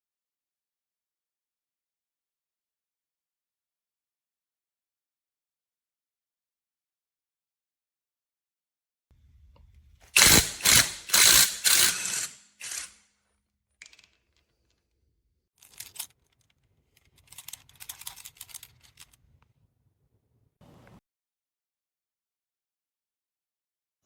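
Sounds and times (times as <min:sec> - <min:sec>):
sharp mechanical clicks and clatters: 0:10.2 - 0:13.0, 0:15.6 - 0:19.2.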